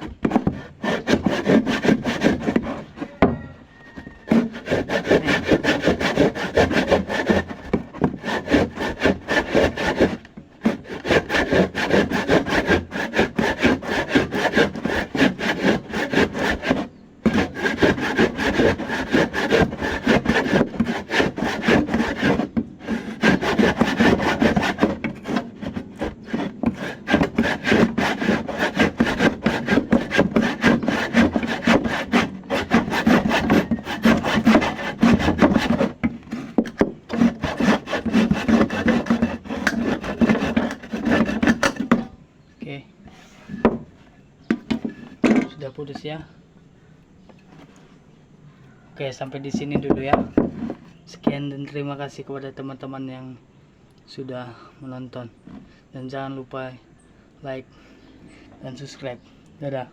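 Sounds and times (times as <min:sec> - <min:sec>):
hand saw rasping: 0:00.0 - 0:42.1.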